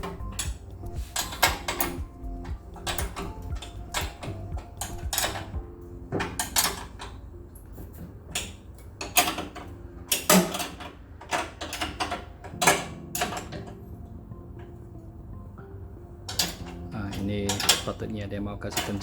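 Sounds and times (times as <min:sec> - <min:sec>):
spanner clinking on bolts: 0:00.0 - 0:13.8, 0:16.3 - 0:19.0.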